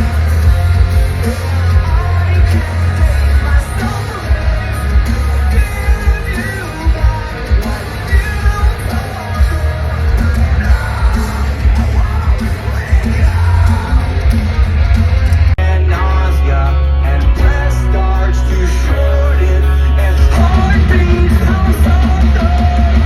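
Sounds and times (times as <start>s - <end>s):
heavy pulsing bass: 0.0s - 23.0s
live rock band playing: 0.0s - 23.0s
singer yelling and singing: 0.0s - 23.0s.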